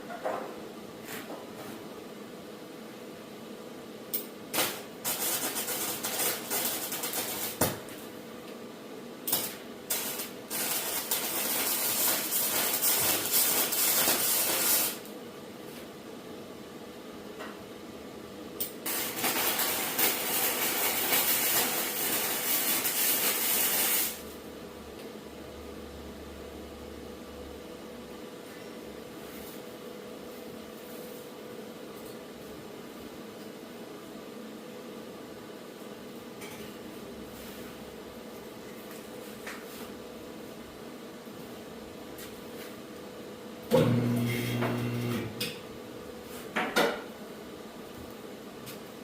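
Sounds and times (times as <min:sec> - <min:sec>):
arc welding crackling hiss: 0:04.5 - 0:07.7, 0:09.2 - 0:15.1, 0:18.8 - 0:24.4.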